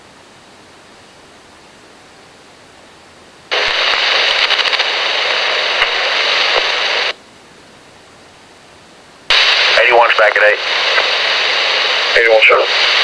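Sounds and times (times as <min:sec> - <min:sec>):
burst of radio static: 0:03.5 - 0:07.2, 0:09.3 - 0:13.0
scanner hiss: 0:03.5 - 0:07.2, 0:09.3 - 0:13.0.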